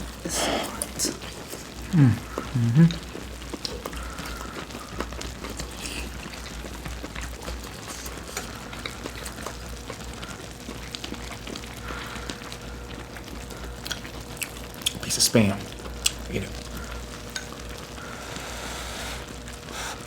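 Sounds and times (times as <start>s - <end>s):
stew bubbling with pops: 0.9s - 15.1s.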